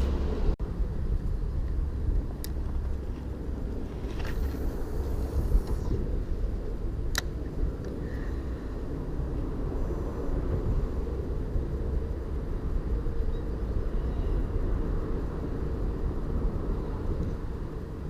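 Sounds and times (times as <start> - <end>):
traffic rumble overhead: 0.0 - 18.0
sharp clicks: 7.1 - 8.0.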